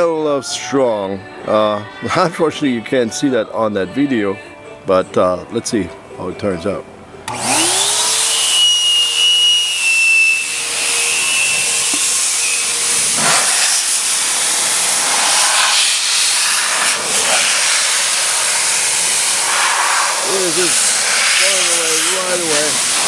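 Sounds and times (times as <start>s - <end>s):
blow dryer rushing air: 7.2s - 23.0s
high motor whine: 7.2s - 23.0s.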